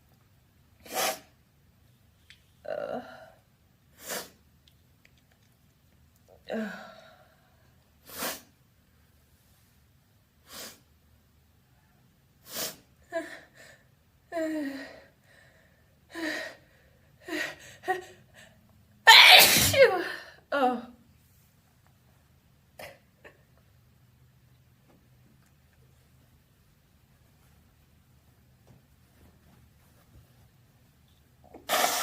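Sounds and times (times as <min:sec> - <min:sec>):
loud wet sneeze: 0:00.8 - 0:01.4, 0:19.1 - 0:20.0, 0:31.6 - 0:32.0.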